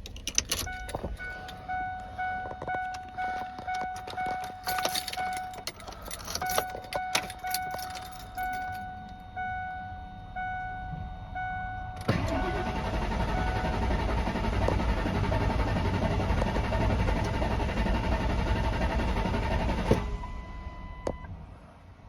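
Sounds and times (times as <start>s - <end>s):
keys jangling in ignition: 0.0s - 9.2s
car warning chime: 0.1s - 14.1s.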